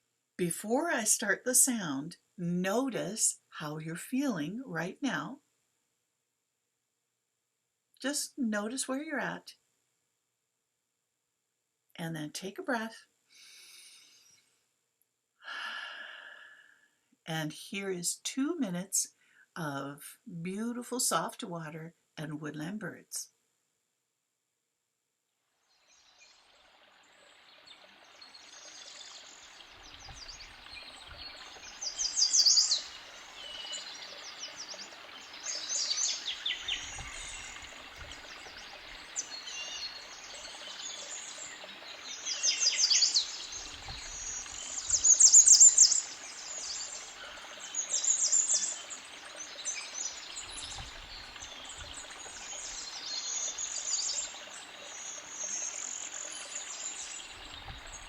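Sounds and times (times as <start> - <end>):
creek bubbling: 25.8 - 58.0
birds singing: 25.9 - 58.0.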